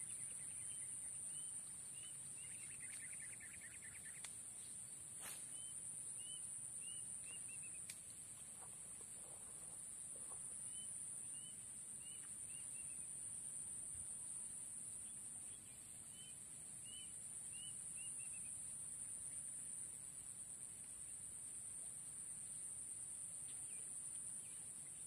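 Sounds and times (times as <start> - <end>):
bird chirping: 0.0 - 4.7, 5.5 - 7.8.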